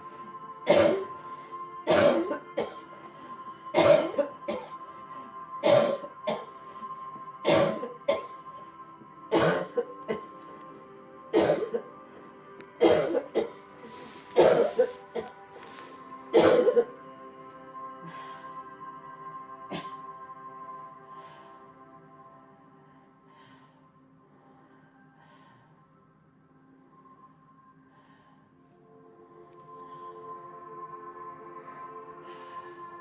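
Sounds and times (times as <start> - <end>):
drone-like background music: 0.0 - 33.0
person coughing hard: 0.7 - 1.1, 1.9 - 2.8, 3.8 - 4.8, 5.6 - 6.5, 7.4 - 8.3, 9.3 - 10.3, 11.3 - 11.9, 12.8 - 13.6, 14.4 - 15.3, 16.3 - 16.9.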